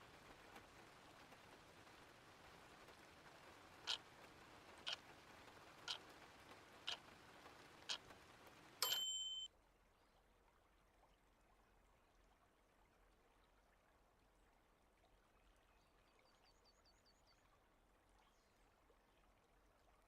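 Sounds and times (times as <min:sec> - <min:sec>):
soft rain: 0:00.0 - 0:20.0
timer ticks: 0:03.7 - 0:09.5.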